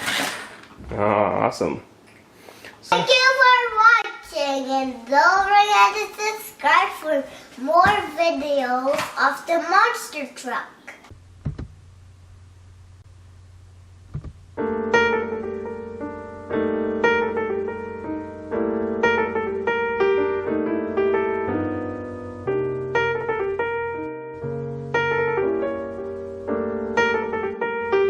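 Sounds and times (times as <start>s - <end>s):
piano music: 14.5s - 28.0s.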